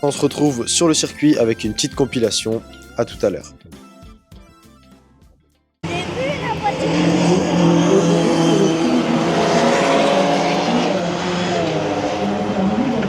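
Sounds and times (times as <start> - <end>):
sports car engine running hard: 5.8 - 13.0.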